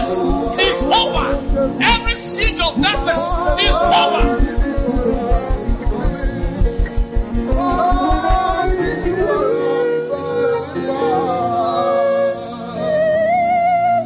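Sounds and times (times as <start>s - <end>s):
fast bass beat: 0.0s - 9.5s.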